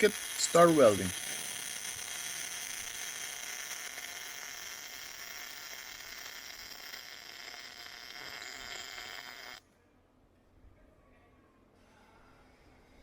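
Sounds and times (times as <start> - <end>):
welder arc sizzling: 0.0 - 9.6.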